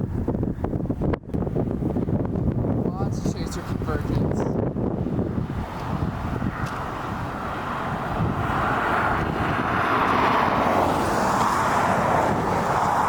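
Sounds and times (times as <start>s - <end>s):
road and wind noise inside car: 0.0s - 13.0s.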